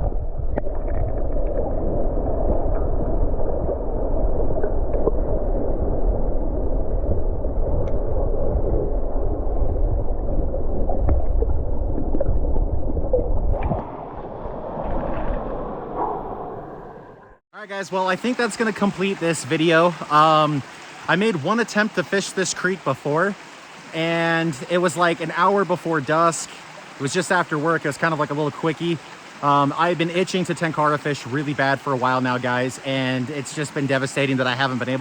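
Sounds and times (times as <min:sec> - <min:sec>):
underwater creek rushing and gurgling: 0:00.0 - 0:35.0.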